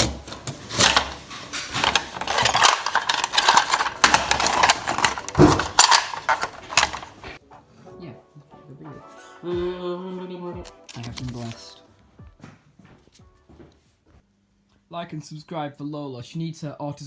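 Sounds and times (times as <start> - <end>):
plastic bricks clicking and rattling: 0.0 - 7.4.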